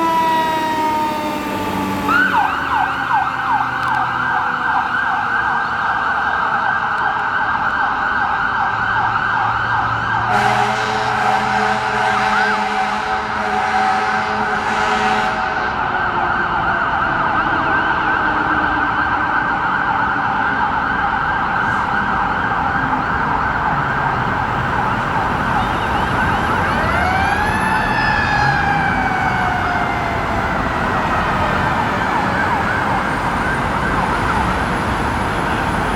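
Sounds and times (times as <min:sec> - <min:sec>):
electronic yelp siren: 0:00.0 - 0:35.9.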